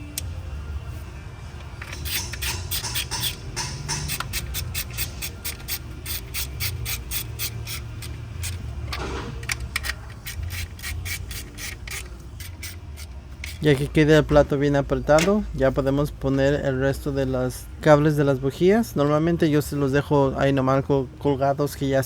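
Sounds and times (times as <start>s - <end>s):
ratchet wrench clicking: 1.8s - 13.9s.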